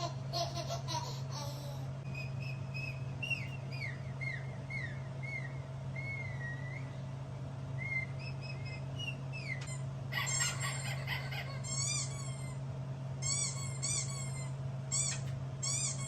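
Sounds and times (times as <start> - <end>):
whistled chirps: 2.0 - 9.7.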